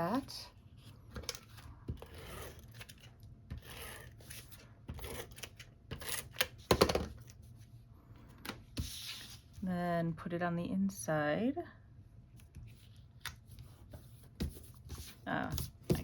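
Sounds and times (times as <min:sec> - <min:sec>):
paper rustling and sliding: 0:08.7 - 0:09.6.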